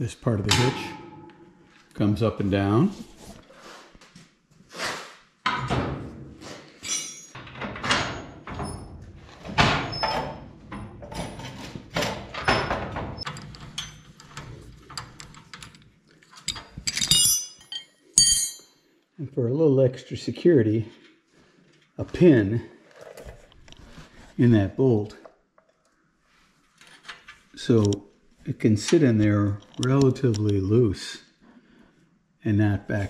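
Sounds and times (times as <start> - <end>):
ringing metallic clinks: 16.5 - 18.8.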